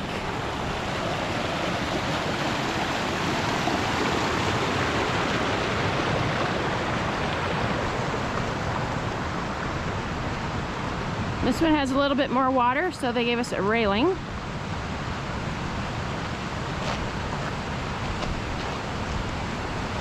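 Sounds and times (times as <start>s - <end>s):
creek water rushing: 0.0s - 20.0s.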